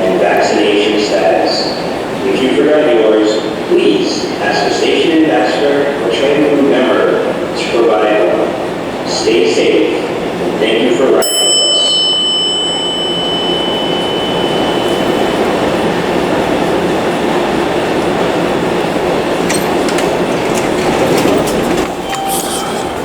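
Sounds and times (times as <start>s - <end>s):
subway train wheels on rails: 0.0s - 23.0s.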